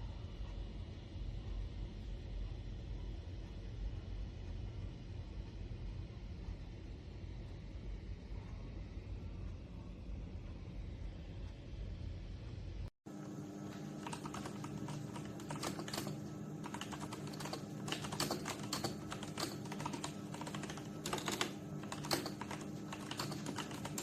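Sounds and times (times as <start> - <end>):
low steady hum: 0.0 - 24.0
mechanical keyboard typing: 13.8 - 24.0.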